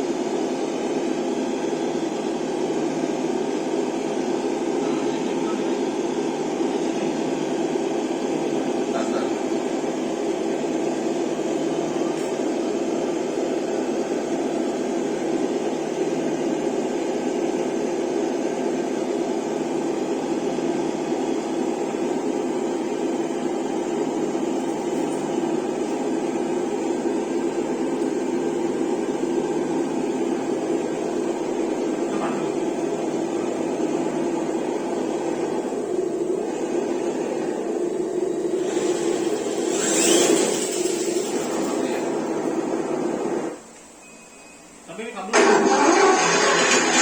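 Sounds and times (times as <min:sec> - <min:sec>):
simulated diesel engine idling: 0:45.3 - 0:47.0.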